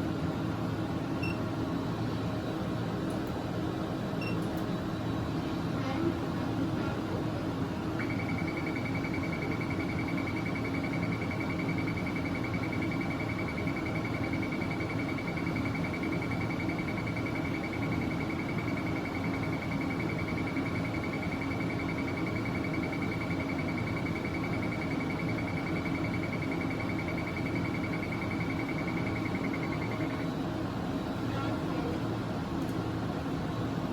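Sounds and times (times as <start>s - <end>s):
ct scanner humming: 7.8s - 31.7s.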